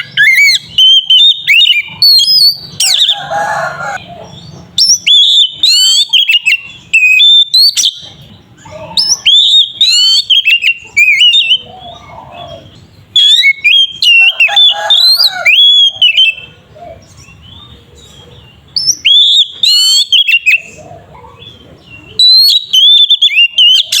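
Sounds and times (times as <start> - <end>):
bird singing whistles and trills: 0.0 - 3.3, 4.0 - 24.0.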